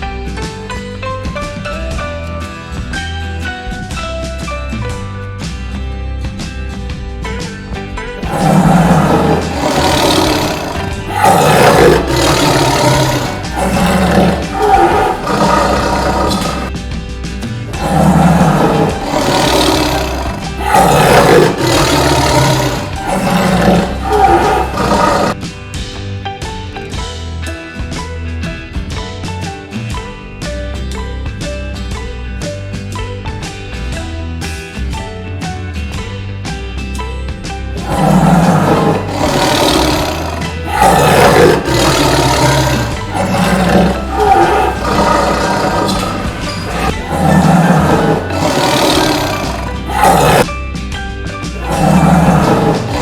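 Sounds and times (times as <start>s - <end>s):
tiger roaring: 8.2s - 16.7s, 17.7s - 25.4s, 37.8s - 50.5s, 51.6s - 53.0s.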